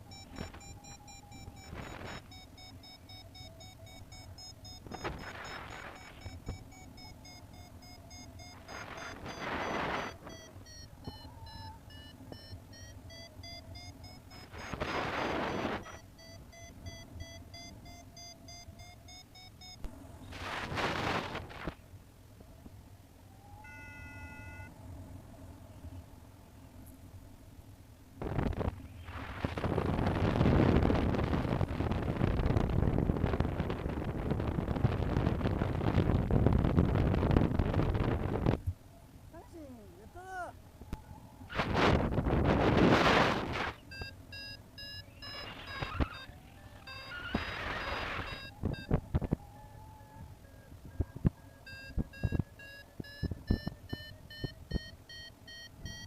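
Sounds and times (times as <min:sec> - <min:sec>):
variometer electronic beeps: 0:00.0 - 0:20.0, 0:23.4 - 0:24.8, 0:42.4 - 0:56.0
wind rushing over microphone: 0:08.1 - 0:11.7, 0:14.3 - 0:16.0, 0:20.2 - 0:21.8, 0:28.2 - 0:38.8, 0:40.8 - 0:44.1, 0:45.2 - 0:54.9.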